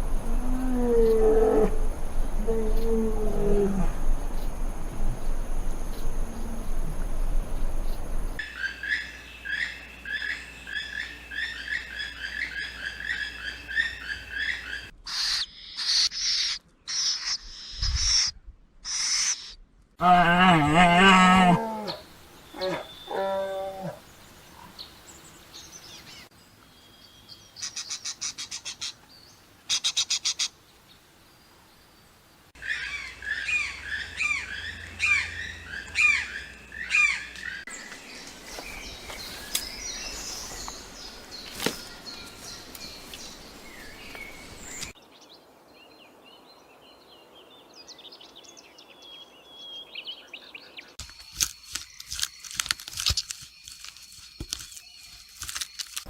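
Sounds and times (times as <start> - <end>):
birds chirping: 18.9 - 45.4.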